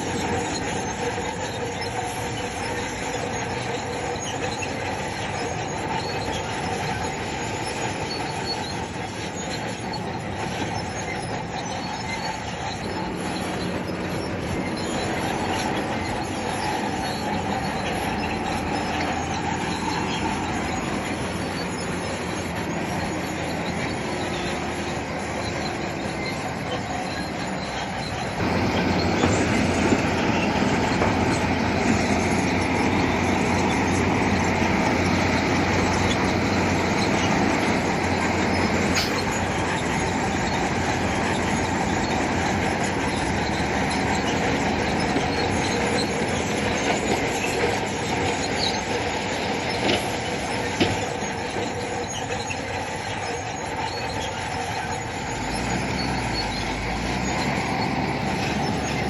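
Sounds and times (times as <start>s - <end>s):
diesel engine running: 0.0s - 59.0s
steel tracks clattering: 0.0s - 59.0s.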